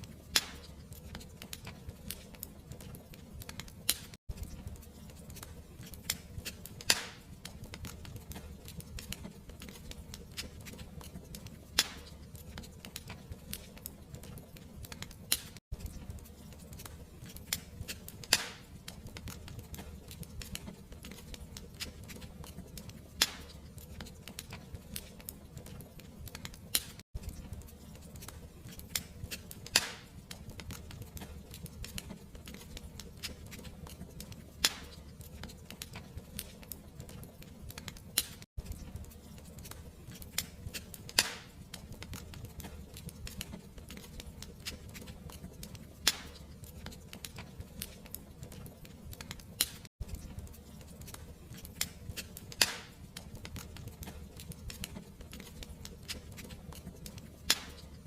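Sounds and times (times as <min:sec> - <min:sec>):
fireplace fire crackling: 0:00.0 - 0:58.0.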